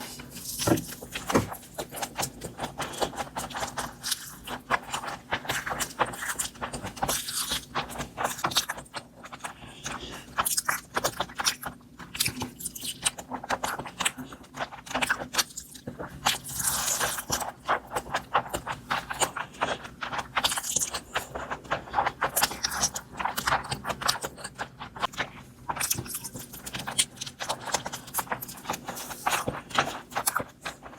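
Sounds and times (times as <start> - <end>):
chewing crunches and wet clicks: 0.3 - 30.9.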